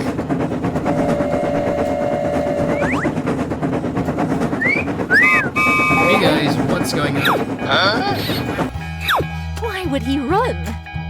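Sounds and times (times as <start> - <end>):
cartoon train rumble: 0.0 - 10.6
whistle-like glides: 0.8 - 3.2, 4.6 - 7.5
held tone: 4.7 - 6.3.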